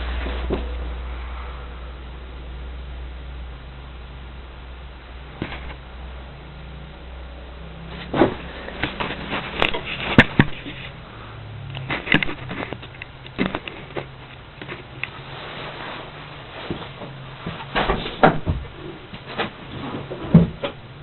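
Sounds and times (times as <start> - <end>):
irregular clicks and knocks: 11.7 - 15.1.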